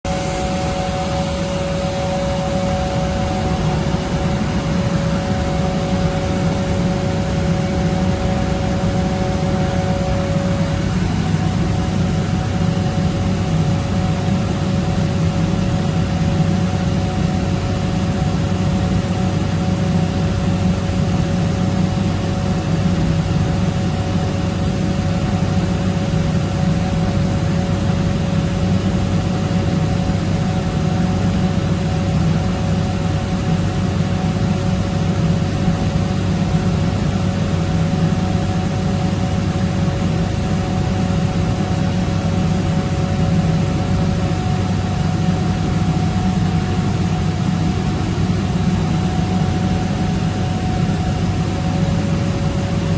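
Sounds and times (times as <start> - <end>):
air compressor humming: 0.0 - 17.4, 31.1 - 52.9
compressor whining tones: 0.0 - 52.9.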